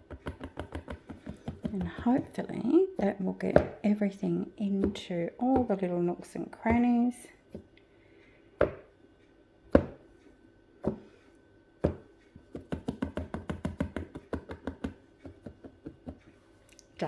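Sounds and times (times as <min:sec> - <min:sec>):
silicone mould tapping on surface: 0:00.0 - 0:02.4, 0:03.0 - 0:03.8, 0:04.6 - 0:05.9, 0:09.7 - 0:10.0, 0:10.8 - 0:11.1, 0:11.8 - 0:16.2.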